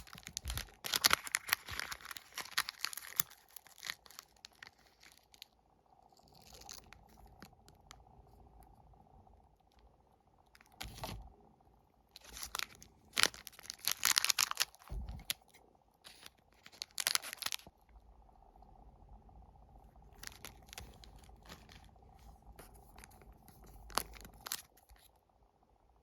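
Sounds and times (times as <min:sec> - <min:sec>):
wrappers tearing and crinkling: 0:00.0 - 0:05.5, 0:06.2 - 0:07.6, 0:12.2 - 0:15.4, 0:16.1 - 0:17.7, 0:20.2 - 0:21.9, 0:22.8 - 0:25.1.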